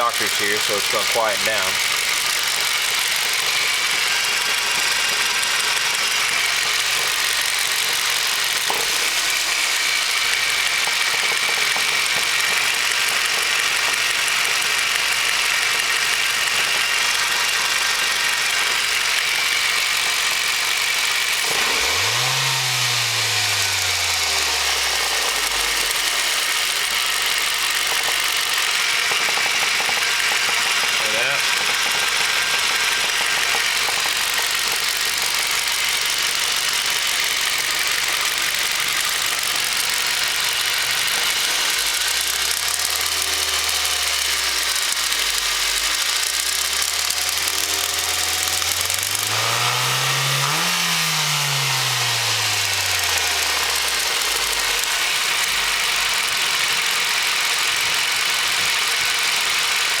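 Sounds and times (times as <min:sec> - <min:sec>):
engine knocking: 0:00.0 - 1:00.0
car engine revving: 0:21.2 - 0:27.6, 0:40.5 - 0:57.2.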